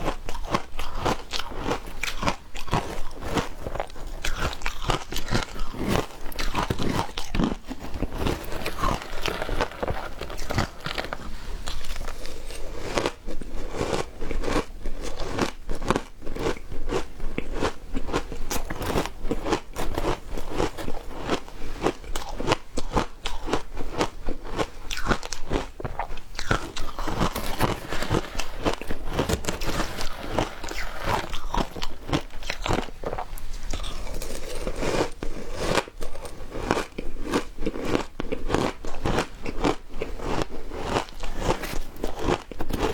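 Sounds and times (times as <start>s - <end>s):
ice crunching while chewed: 0.0s - 42.9s.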